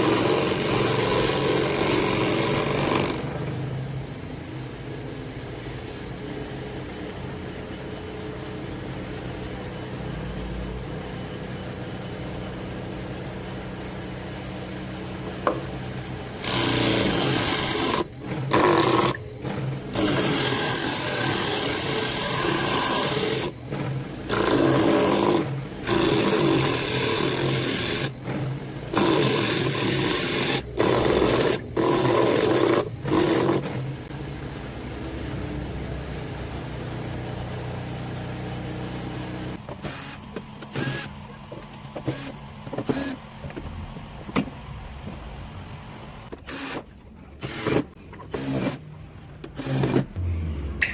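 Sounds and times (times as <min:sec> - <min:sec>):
disc sander grinding: 0:16.4 - 0:33.7.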